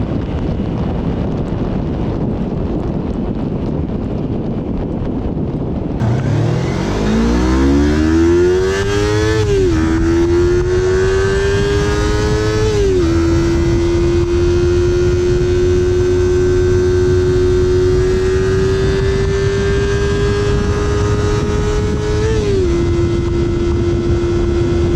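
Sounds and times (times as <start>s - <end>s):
motorcycle engine accelerating: 6.0s - 24.9s.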